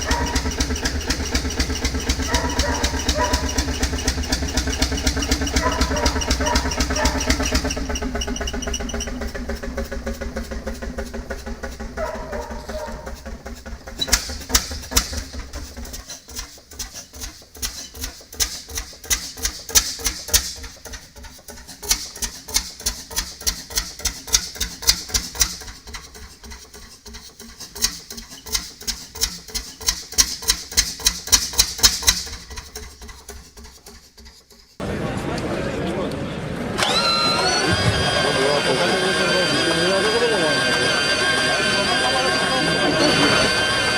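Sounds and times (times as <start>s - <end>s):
old engine clattering: 0.0s - 35.6s.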